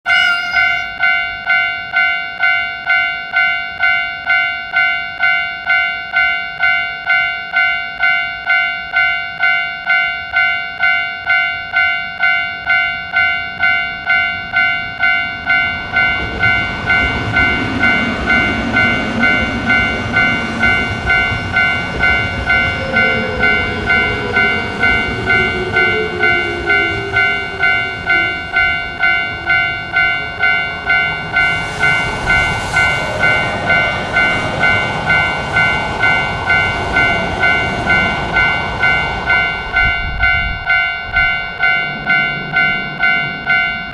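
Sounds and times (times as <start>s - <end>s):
railroad crossing bell ringing: 0.1s - 43.9s
train passing: 14.1s - 43.8s.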